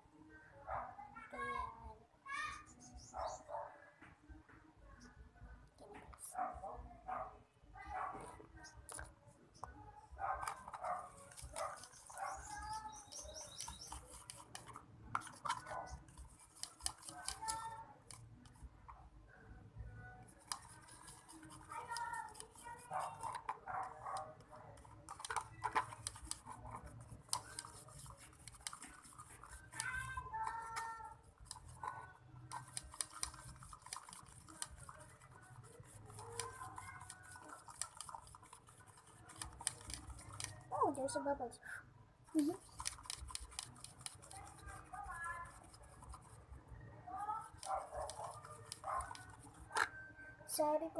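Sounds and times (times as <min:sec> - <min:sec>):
clicks and scrapes on container: 0:08.2 - 0:18.6, 0:20.2 - 0:40.7, 0:42.4 - 0:46.5, 0:47.4 - 0:50.1
slime being stirred in a bowl: 0:10.2 - 0:18.3, 0:20.0 - 0:41.2, 0:42.3 - 0:50.1.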